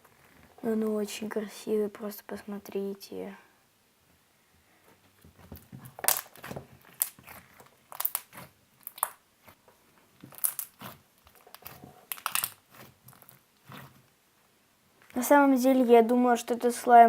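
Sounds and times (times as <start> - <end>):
slime squeezed clicking and crackling: 6.0 - 9.2, 10.3 - 14.0.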